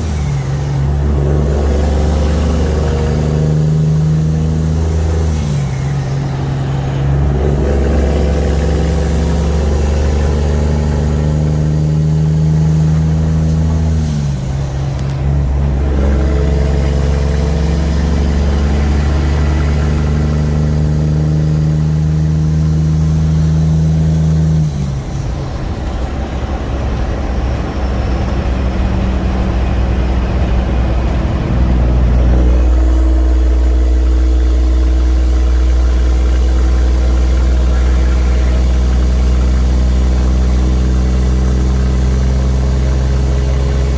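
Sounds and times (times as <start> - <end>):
diesel truck engine shifting gears: 0.0 - 43.9.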